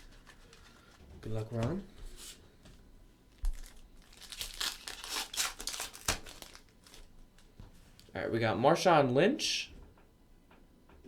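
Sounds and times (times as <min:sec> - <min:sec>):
wrapper tearing and crinkling: 0:00.0 - 0:01.0, 0:03.4 - 0:08.1.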